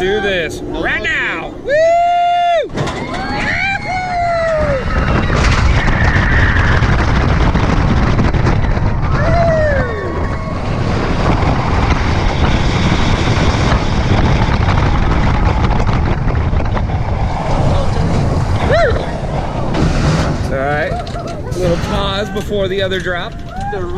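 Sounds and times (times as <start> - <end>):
wind roaring over microphone: 0.0 - 23.9
rider whooping: 1.2 - 7.3, 9.0 - 11.3, 17.5 - 19.7.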